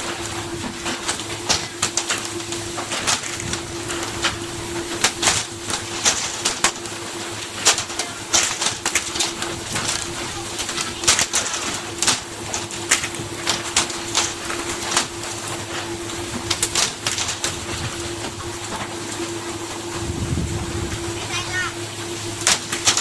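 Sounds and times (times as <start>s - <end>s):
steady mechanical hum: 0.0s - 23.0s.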